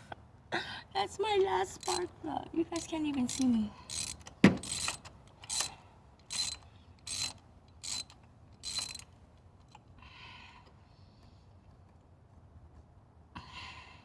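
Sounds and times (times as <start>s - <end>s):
socket ratchet wrench clicking: 1.8s - 2.1s, 2.8s - 9.1s.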